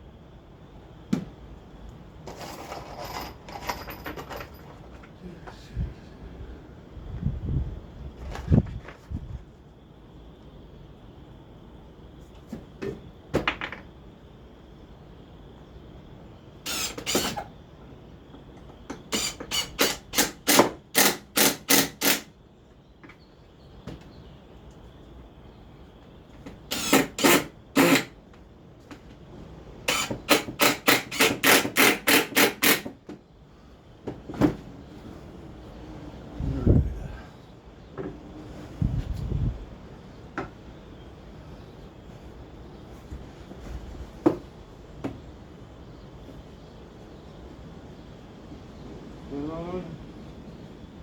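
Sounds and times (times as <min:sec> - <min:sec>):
hammer nailing into wood: 0:19.1 - 0:22.3, 0:29.9 - 0:33.0.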